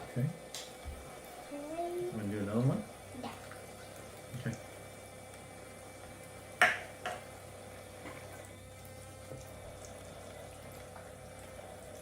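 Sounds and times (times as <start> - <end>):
faint pump hum: 0.0 - 12.0
thin stream of water running: 0.0 - 12.0.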